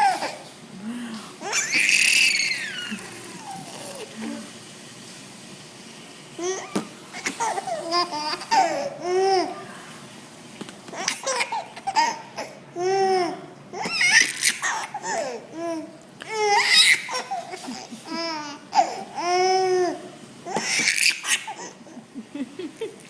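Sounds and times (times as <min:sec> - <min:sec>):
baby laughing hard: 0:07.2 - 0:09.5, 0:11.0 - 0:15.5, 0:16.4 - 0:19.8, 0:20.5 - 0:22.0.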